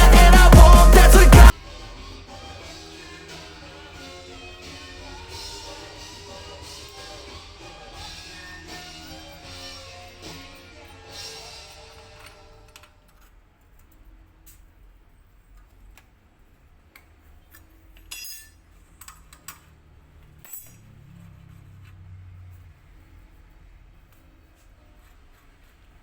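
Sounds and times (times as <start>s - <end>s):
metal parts clinking: 17.5s - 21.0s.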